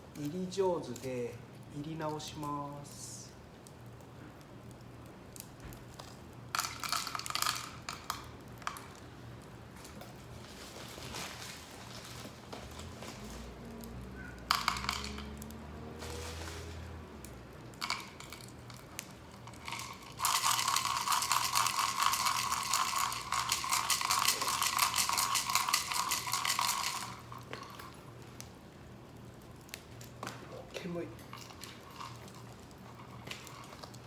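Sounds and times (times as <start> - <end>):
nuts rattling in shaken pan: 6.5 - 8.9, 14.4 - 17.0, 17.8 - 28.0, 30.7 - 34.0.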